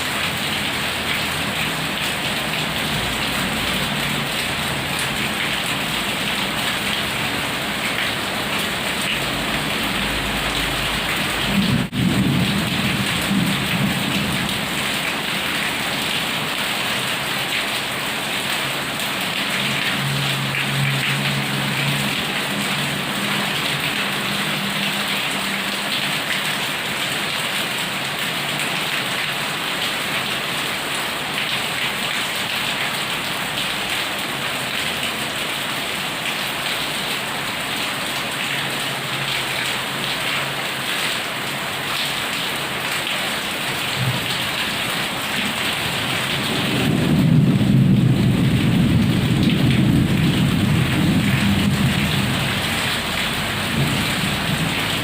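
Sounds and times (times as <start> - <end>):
heavy rain pouring: 0.0 - 55.0
thunder rumbling: 9.4 - 14.8, 46.4 - 55.0.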